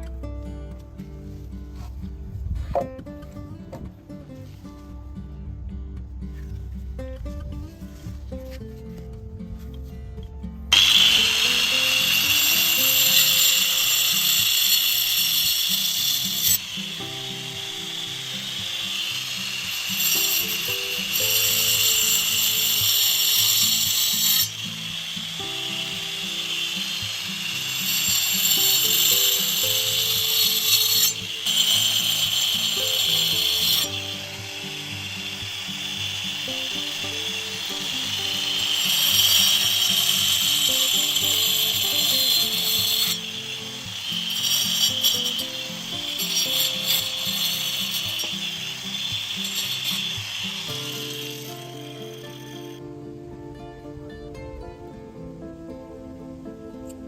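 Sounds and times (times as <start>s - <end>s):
background music: 0.0s - 57.0s
power tool cutting bamboo: 10.7s - 52.8s.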